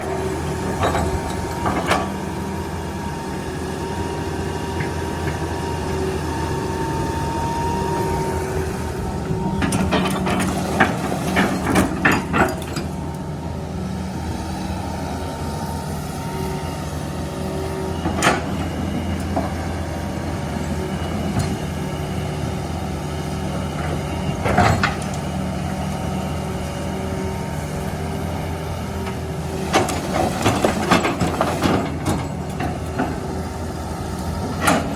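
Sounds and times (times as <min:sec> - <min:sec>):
backhoe loader engine running: 0:00.0 - 0:34.9
metal clanks and knocks: 0:00.6 - 0:02.2, 0:09.2 - 0:13.0.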